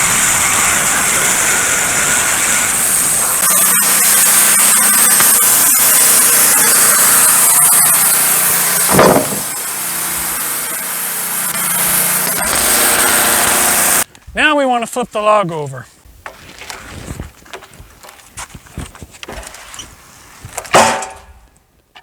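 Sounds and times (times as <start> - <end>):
band saw blade cutting log: 0.0 - 14.1
sawmill engine under load: 0.0 - 14.1.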